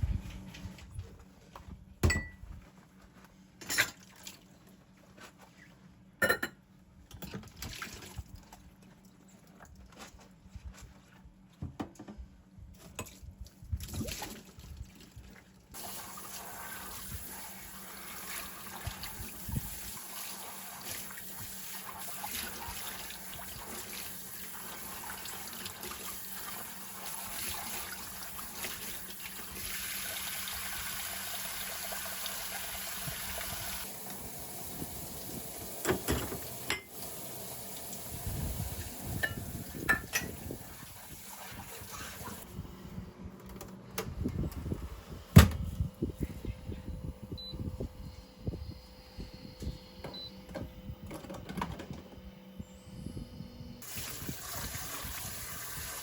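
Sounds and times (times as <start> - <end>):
water running: 15.8 - 42.5, 53.8 - 56.0.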